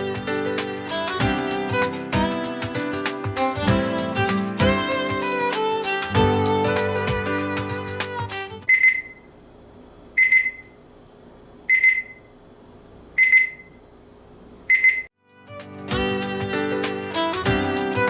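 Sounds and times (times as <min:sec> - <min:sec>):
background music: 0:00.0 - 0:08.7, 0:15.2 - 0:18.0
thermometer alarm double beeps: 0:08.7 - 0:09.3, 0:10.2 - 0:10.8, 0:11.7 - 0:12.3, 0:13.2 - 0:13.8, 0:14.7 - 0:15.1.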